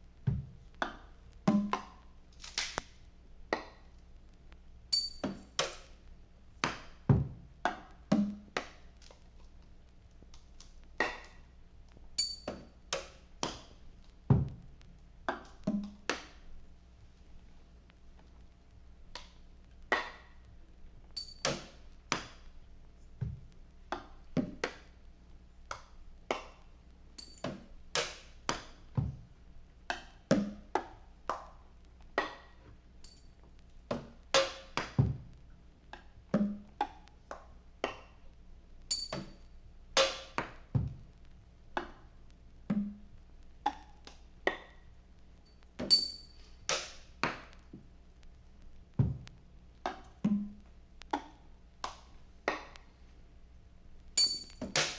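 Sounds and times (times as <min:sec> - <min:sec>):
percussion knocks and taps: 0:00.3 - 0:02.0, 0:42.7 - 0:43.1.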